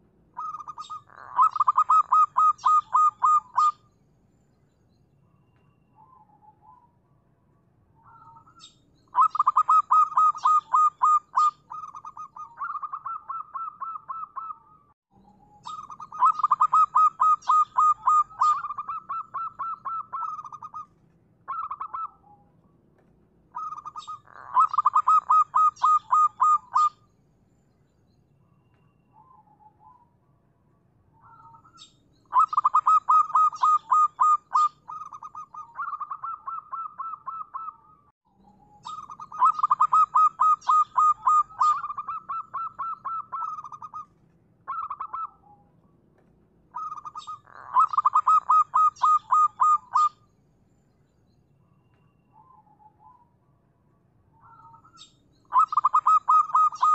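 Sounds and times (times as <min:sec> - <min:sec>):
dove cooing: 0:00.4 - 0:03.8, 0:08.1 - 0:14.8, 0:15.6 - 0:20.9, 0:21.5 - 0:22.4, 0:23.6 - 0:27.0, 0:31.2 - 0:37.9, 0:38.8 - 0:44.1, 0:44.7 - 0:45.4, 0:46.8 - 0:50.2, 0:54.4 - 0:56.9.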